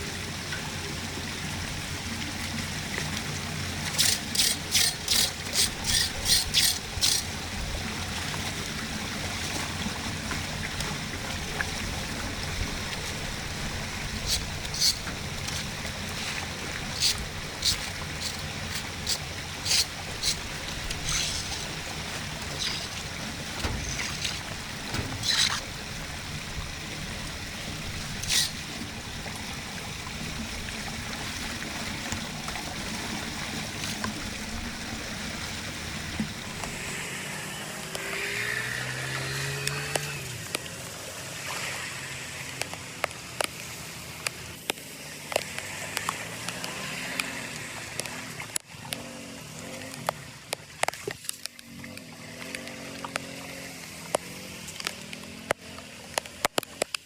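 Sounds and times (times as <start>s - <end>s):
water trickling: 0.0s - 37.1s
water rushing and draining: 0.0s - 56.9s.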